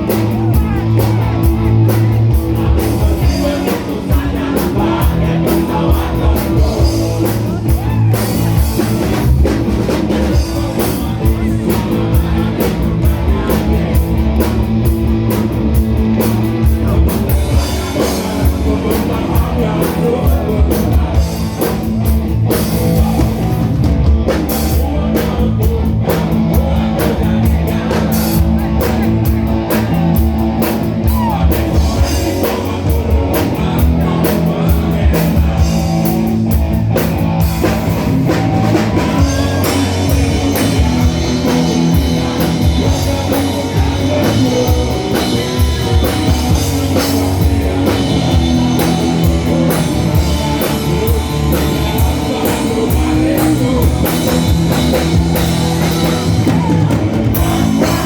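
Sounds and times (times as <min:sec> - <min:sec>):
drum kit beat: 0:00.0 - 0:58.0
live rock band playing: 0:00.0 - 0:58.0.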